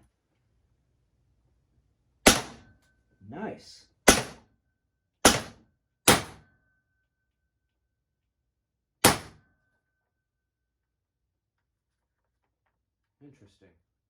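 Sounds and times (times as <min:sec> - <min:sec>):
compressed-air launcher shots: 0:02.3 - 0:02.6.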